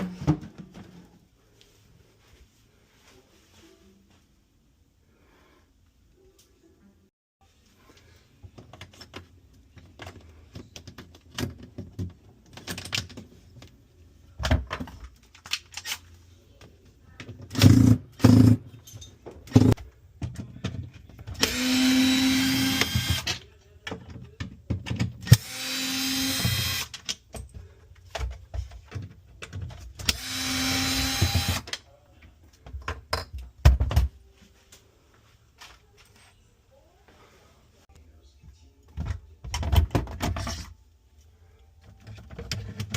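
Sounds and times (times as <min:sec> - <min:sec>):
power drill whining: 0:21.4 - 0:23.4, 0:25.3 - 0:26.9, 0:30.1 - 0:31.7.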